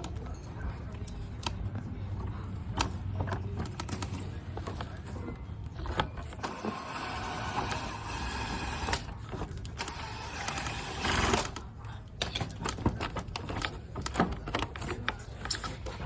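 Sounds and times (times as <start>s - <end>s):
cordless drill driving screw: 9.8s - 11.6s.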